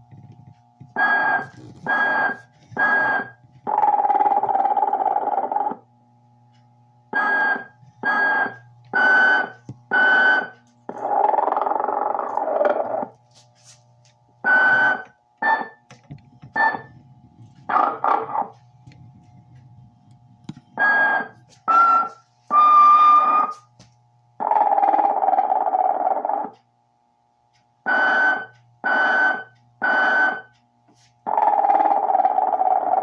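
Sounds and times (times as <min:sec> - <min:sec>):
steady low hum: 0:00.0 - 0:31.4
recorded snoring: 0:01.2 - 0:05.8
recorded whistling: 0:21.7 - 0:23.5.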